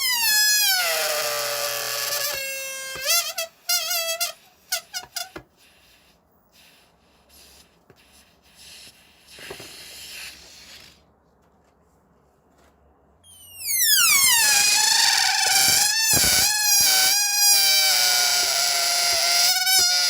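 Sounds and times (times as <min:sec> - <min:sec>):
balloon squealing: 0:00.0 - 0:05.4, 0:13.3 - 0:20.0
balloon hissing and rubbing: 0:00.0 - 0:11.1, 0:13.3 - 0:20.0.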